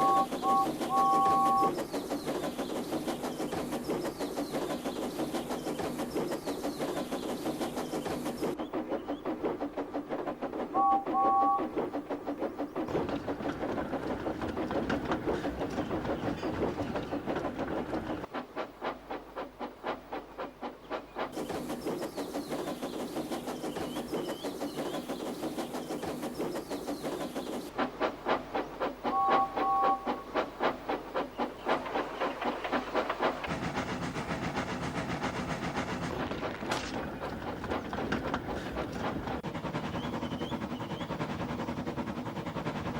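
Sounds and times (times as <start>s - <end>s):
two-note steam whistle: 0.0s - 1.8s, 10.7s - 11.7s, 29.1s - 30.4s
wagon wheels clattering over rail joints: 12.6s - 18.3s, 30.7s - 42.0s.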